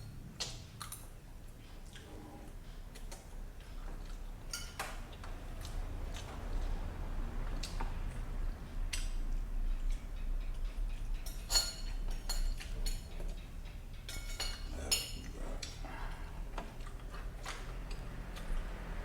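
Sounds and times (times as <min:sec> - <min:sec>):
cutlery clinking on a plate: 0:04.5 - 0:05.0, 0:11.2 - 0:13.3, 0:14.1 - 0:15.4.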